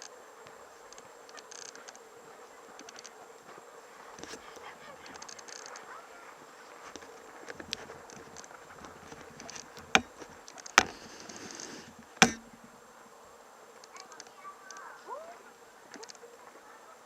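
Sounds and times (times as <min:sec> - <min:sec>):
faint steady hum: 0:00.0 - 0:17.0
sharp knocks: 0:09.0 - 0:12.8.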